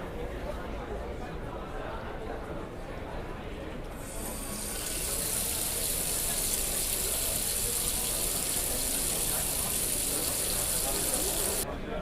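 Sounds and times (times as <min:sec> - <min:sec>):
running water hiss: 0:04.0 - 0:11.6.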